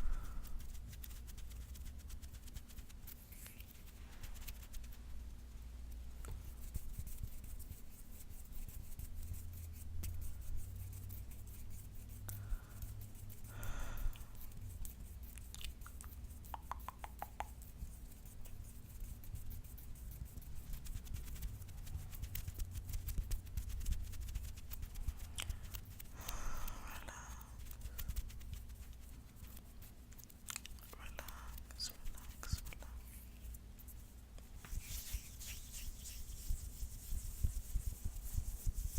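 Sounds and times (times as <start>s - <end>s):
breath: 0.0s - 0.6s, 12.3s - 14.3s, 26.2s - 28.0s
fingernails scratching a palm: 34.6s - 38.9s.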